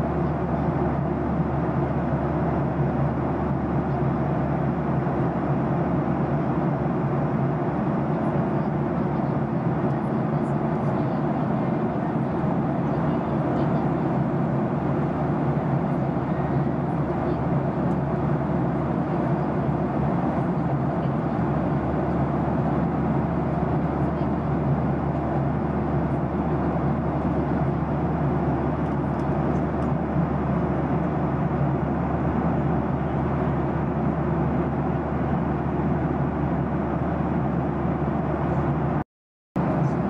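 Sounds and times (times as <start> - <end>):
jet airliner cabin noise: 0.0 - 39.0, 39.6 - 40.0.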